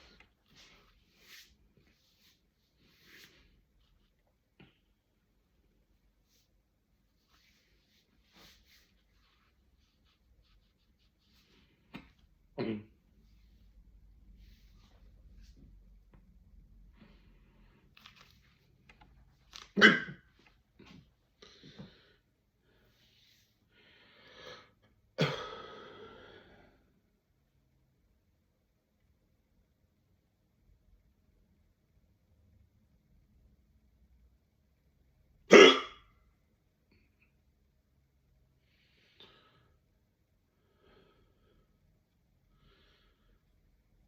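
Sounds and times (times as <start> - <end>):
person breathing softly: 16.8 - 18.2, 21.3 - 24.9, 25.5 - 27.1, 38.5 - 43.8
loud hiccup: 19.8 - 20.3, 35.5 - 36.1.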